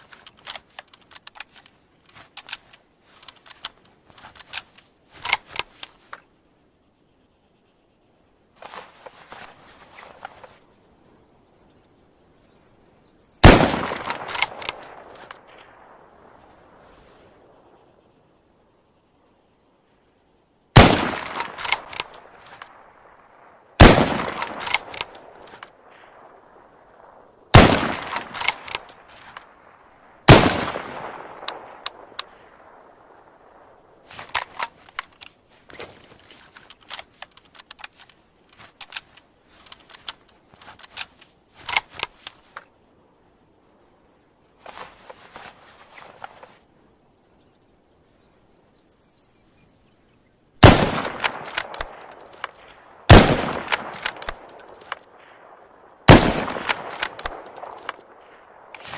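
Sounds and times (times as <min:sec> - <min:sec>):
rifle bolt clicks and knocks: 0:00.0 - 0:06.3, 0:13.5 - 0:15.4, 0:21.1 - 0:22.8, 0:23.8 - 0:25.7, 0:27.8 - 0:29.5, 0:34.1 - 0:42.7, 0:50.7 - 0:52.6, 0:53.2 - 0:55.2, 0:56.2 - 0:58.1
rifle shots with echo: 0:13.4 - 0:15.1, 0:20.8 - 0:21.8, 0:23.8 - 0:25.0, 0:27.5 - 0:28.9, 0:30.3 - 0:32.3, 0:50.6 - 0:54.6, 0:56.1 - 0:58.0.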